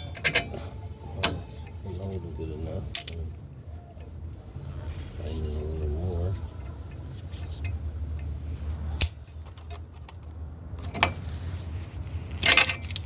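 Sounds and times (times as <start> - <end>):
low steady hum: 0.0 - 13.0
metal tools clinking: 2.9 - 3.3, 12.4 - 13.0.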